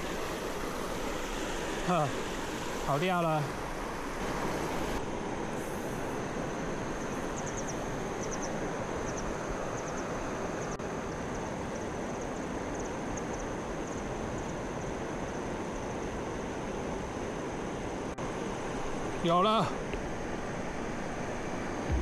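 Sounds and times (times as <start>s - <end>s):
mountain stream rushing: 0.0s - 22.0s
faint high chirping calls: 7.0s - 14.6s.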